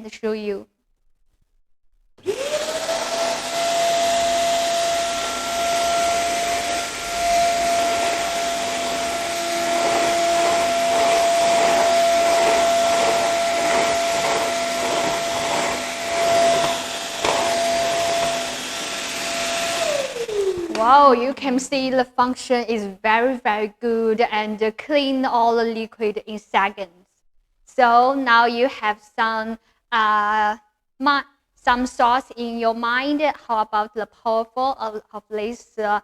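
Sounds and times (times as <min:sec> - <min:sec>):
vacuum cleaner motor whine: 0:02.2 - 0:21.4
vacuum slurping liquid: 0:06.0 - 0:18.5.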